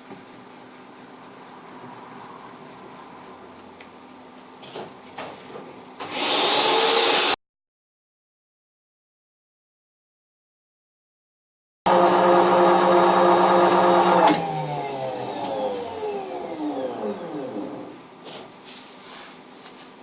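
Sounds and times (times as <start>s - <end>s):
milling machine motor whine: 11.9s - 18.0s.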